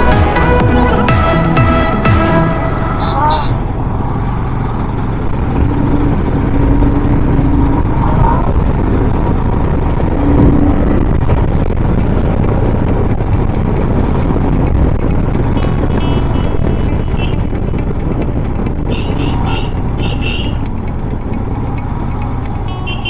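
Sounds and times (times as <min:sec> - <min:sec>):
wind rush on microphone: 0:03.7 - 0:21.3
motorcycle engine running: 0:03.8 - 0:23.0.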